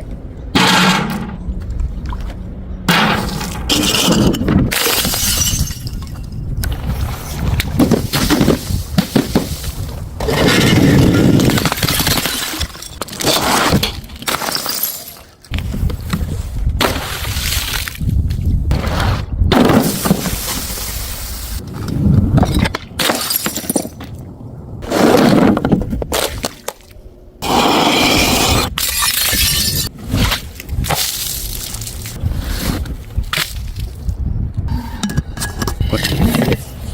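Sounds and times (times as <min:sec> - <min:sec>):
glass bottles smashing: 0:03.1 - 0:06.2, 0:11.3 - 0:13.2, 0:14.3 - 0:15.4, 0:23.0 - 0:24.0, 0:28.8 - 0:29.9.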